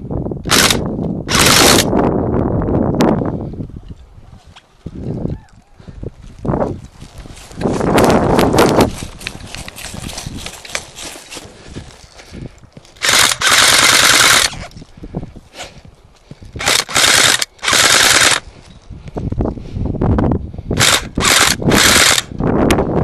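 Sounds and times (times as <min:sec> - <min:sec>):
airsoft guns firing bursts: 0:00.5 - 0:01.9, 0:13.0 - 0:14.6, 0:16.6 - 0:18.4, 0:20.8 - 0:22.3.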